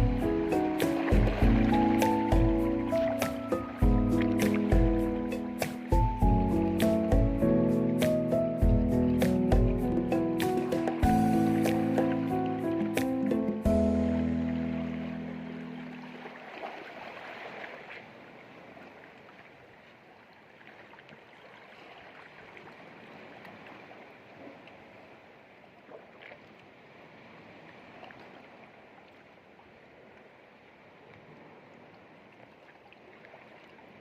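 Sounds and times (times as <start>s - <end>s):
music track: 0.0s - 16.2s
sea water lapping: 0.0s - 34.0s.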